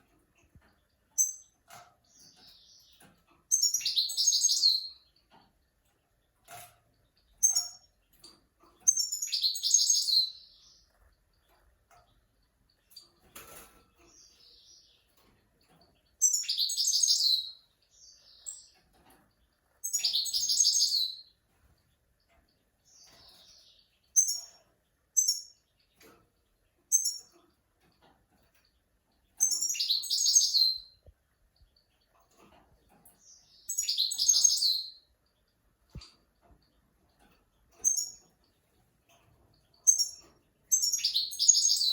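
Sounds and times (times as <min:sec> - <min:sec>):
bird chirps and soft twittering: 0:00.0 - 0:41.9
goldfinch singing: 0:01.2 - 0:05.2, 0:07.4 - 0:10.9, 0:16.2 - 0:18.9, 0:19.8 - 0:21.4, 0:25.2 - 0:25.8, 0:26.9 - 0:27.4, 0:29.4 - 0:32.1, 0:33.0 - 0:35.1, 0:37.7 - 0:38.3, 0:39.5 - 0:41.9.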